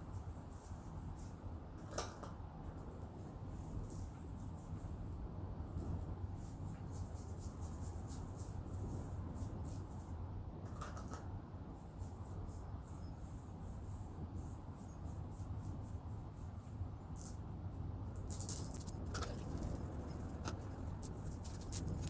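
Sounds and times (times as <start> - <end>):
steady low hum: 15.4 - 22.0
brush scratching on chain: 18.2 - 22.0
chain links clicking: 18.3 - 22.0.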